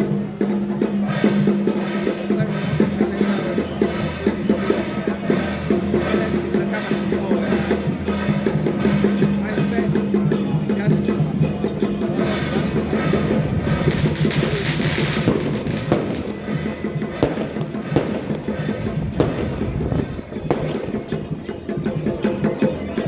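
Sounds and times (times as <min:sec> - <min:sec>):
drums and percussion music: 0:00.0 - 0:23.0
firecrackers crackling: 0:12.4 - 0:21.4.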